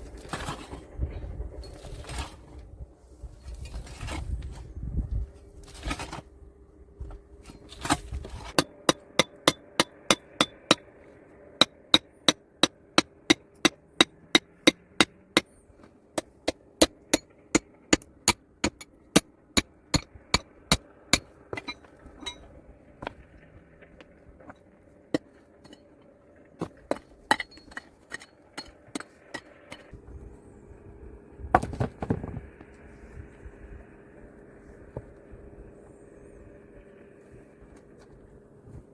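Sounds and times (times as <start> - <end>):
hard tool striking stone: 7.5 - 10.9, 11.6 - 15.5, 16.2 - 23.2, 26.6 - 29.9.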